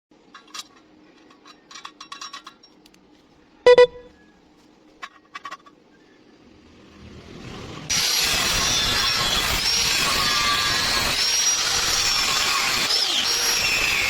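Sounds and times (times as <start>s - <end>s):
steel pieces clinking: 0.3s - 2.9s.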